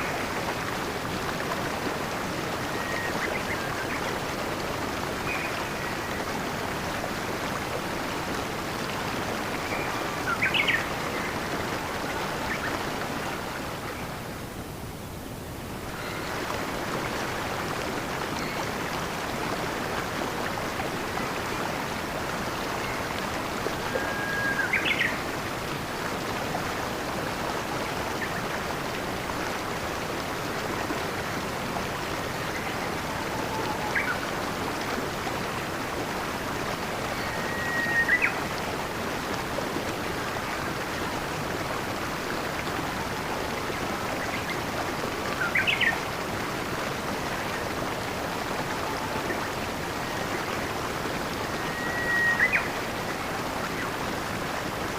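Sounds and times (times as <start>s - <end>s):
stream water flowing: 0.0s - 54.9s.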